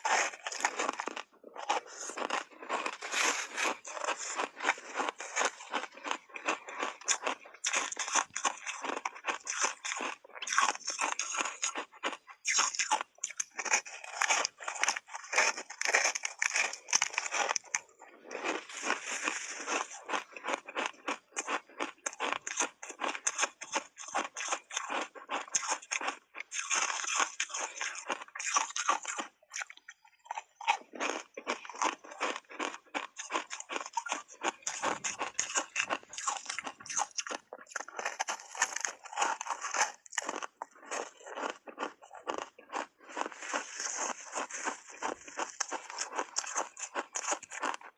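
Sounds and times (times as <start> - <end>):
ice crunching while chewed: 0.0 - 47.9.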